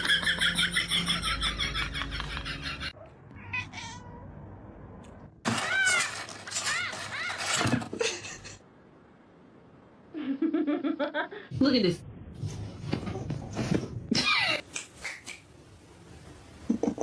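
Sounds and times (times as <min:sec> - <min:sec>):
cat meowing: 0:03.3 - 0:04.3.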